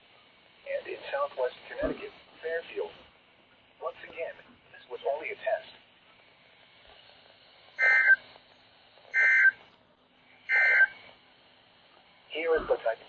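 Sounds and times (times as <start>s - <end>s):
faint radio hiss: 0.0s - 13.0s
screeching digital data tones: 7.8s - 8.2s, 9.1s - 9.6s, 10.5s - 11.0s.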